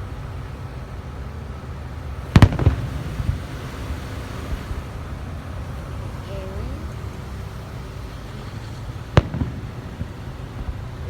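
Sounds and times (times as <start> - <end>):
firework crack: 0.0 - 11.0
echoing pops: 2.3 - 4.6, 9.1 - 11.0
firework bang: 2.3 - 4.9, 9.1 - 11.0.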